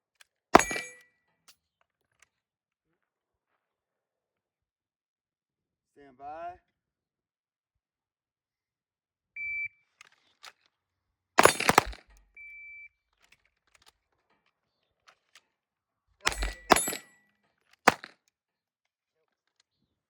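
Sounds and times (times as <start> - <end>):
pistol shots: 0.6 - 1.0, 11.4 - 12.1, 16.3 - 17.1, 17.9 - 18.1.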